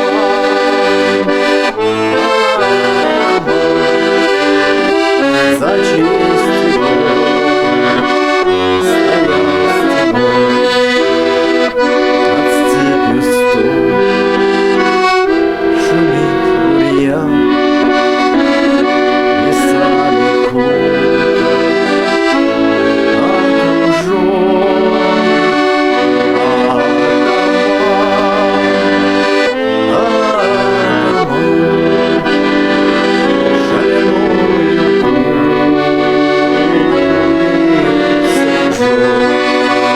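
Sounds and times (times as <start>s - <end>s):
accordion playing a melody: 0.0s - 39.9s.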